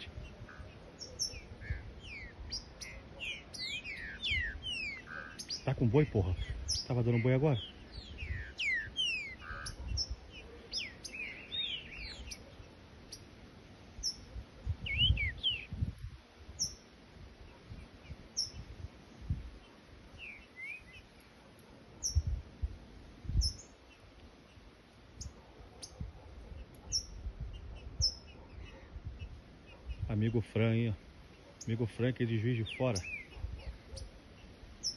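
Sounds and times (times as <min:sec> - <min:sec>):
bird singing whistled phrases: 0:01.0 - 0:05.7, 0:06.4 - 0:10.1, 0:14.8 - 0:15.8, 0:20.2 - 0:21.0, 0:32.6 - 0:33.4.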